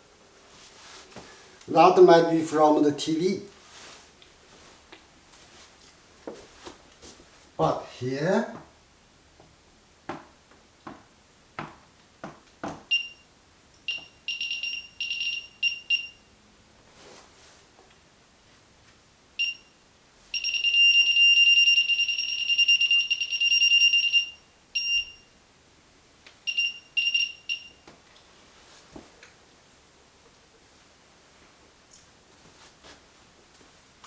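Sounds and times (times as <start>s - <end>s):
signal detector beeping: 13.9s - 16.2s, 19.4s - 25.3s, 26.5s - 27.8s.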